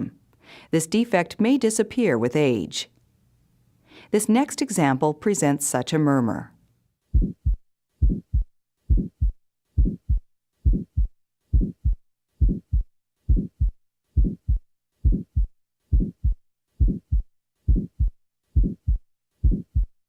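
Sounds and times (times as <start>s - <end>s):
heart murmur: 7.1s - 20.0s
heartbeat thuds: 7.1s - 20.0s.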